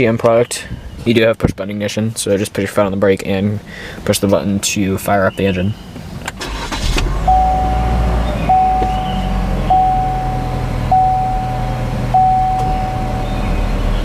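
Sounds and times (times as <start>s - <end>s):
car engine starting and idling: 6.1s - 14.0s
dashboard warning chime: 6.6s - 13.7s.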